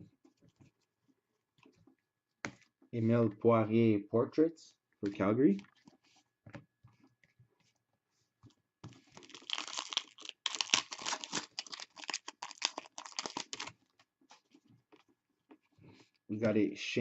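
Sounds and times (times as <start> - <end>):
foil wrapper tearing and crinkling: 9.0 - 13.7.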